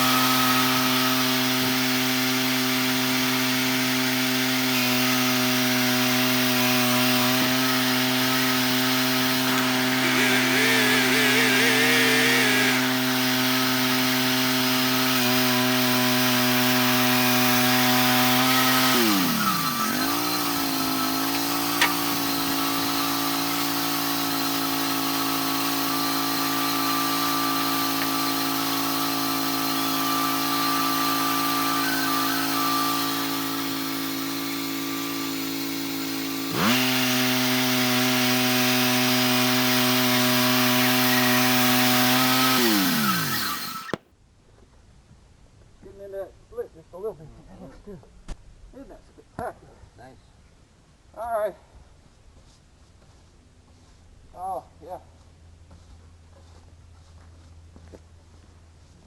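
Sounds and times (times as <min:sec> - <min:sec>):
sawmill engine running: 0:00.0 - 0:44.0.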